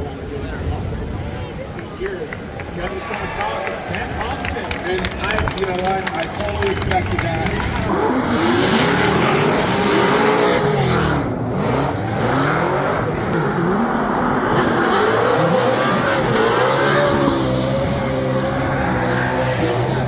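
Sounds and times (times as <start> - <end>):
car engines revving hard: 6.5 - 20.0.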